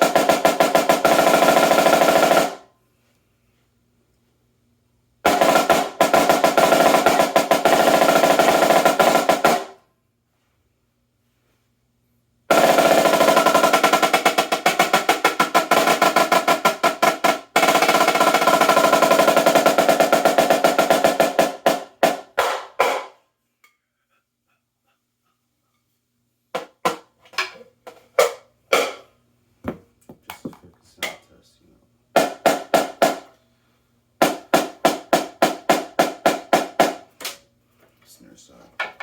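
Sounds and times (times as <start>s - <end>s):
snare drum rolls: 0.0s - 2.7s, 5.2s - 9.8s, 12.5s - 23.2s, 32.1s - 33.3s, 34.2s - 37.1s.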